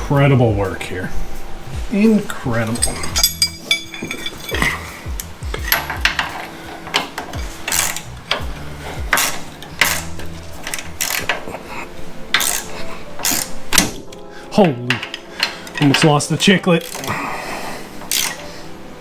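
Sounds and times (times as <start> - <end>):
tools and metal parts clinking: 2.2 - 17.3, 17.9 - 18.5.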